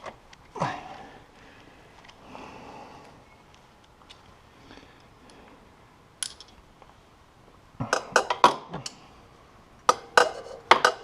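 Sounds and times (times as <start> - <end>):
metal tools clinking and knocking: 6.2 - 6.6.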